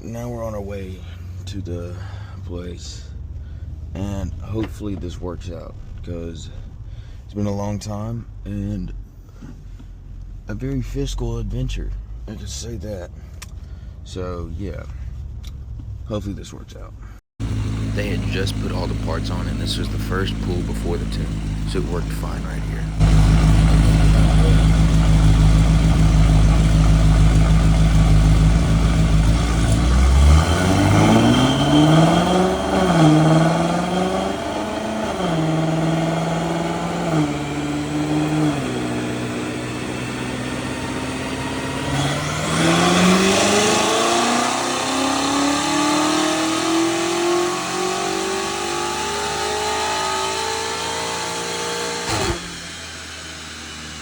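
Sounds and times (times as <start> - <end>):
car engine full-throttle revving: 17.4 - 54.0.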